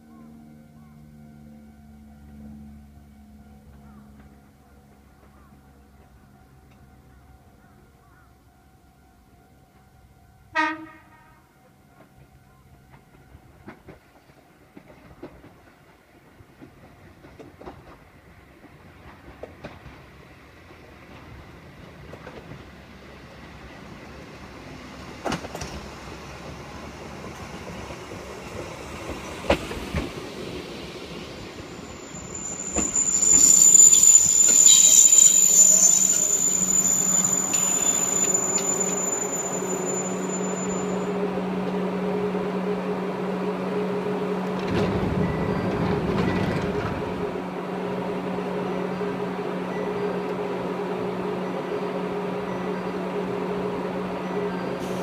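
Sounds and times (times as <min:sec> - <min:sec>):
electric train arriving: 0:00.0 - 0:55.0
train brakes squealing: 0:31.0 - 0:41.2, 0:54.2 - 0:55.0.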